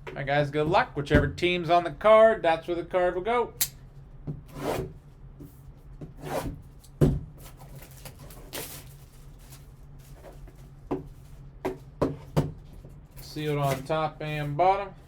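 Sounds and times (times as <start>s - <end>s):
packaging rustling: 7.4s - 10.8s.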